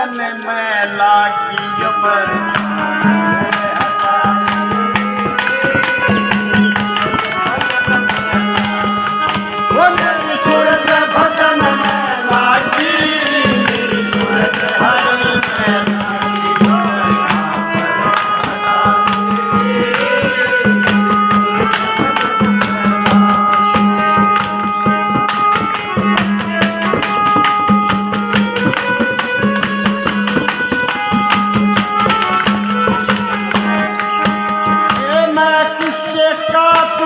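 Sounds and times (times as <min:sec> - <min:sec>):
folk melody over drone: 0:00.0 - 0:37.0
fast percussion strokes: 0:02.4 - 0:37.0.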